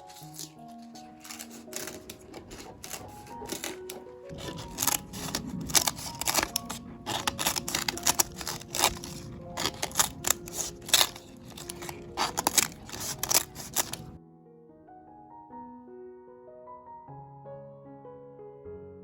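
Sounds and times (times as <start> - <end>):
sharp snips and clicks: 0.0 - 14.2
soft background music: 0.0 - 19.0.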